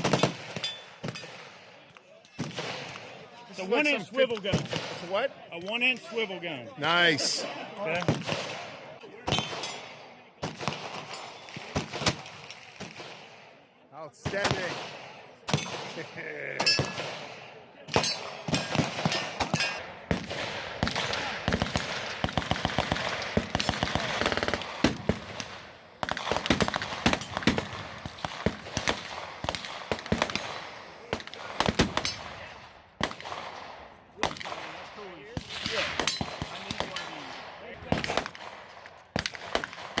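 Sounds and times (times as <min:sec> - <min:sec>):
gunshots: 0:07.9 - 0:13.5, 0:14.2 - 0:40.0.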